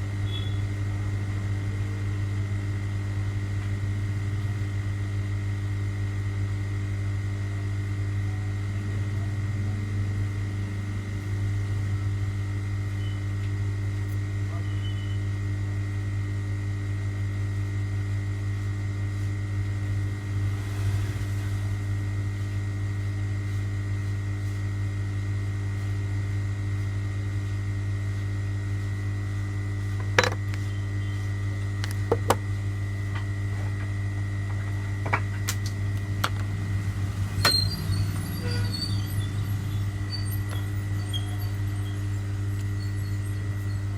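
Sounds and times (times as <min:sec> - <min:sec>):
electrical hum: 0:00.0 - 0:43.9
faint high whine: 0:00.2 - 0:00.7, 0:08.3 - 0:13.5, 0:14.5 - 0:15.4, 0:36.0 - 0:43.9.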